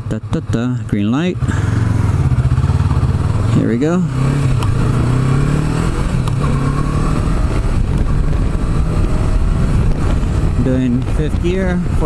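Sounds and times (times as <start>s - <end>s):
motorcycle engine accelerating: 0.0s - 12.0s
wind rumble on microphone: 4.4s - 12.0s.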